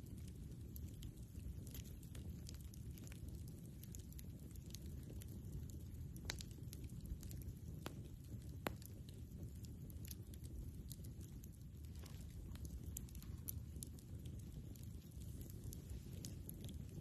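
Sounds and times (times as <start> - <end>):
campfire crackling: 0.0 - 17.0
low rumble: 11.0 - 17.0.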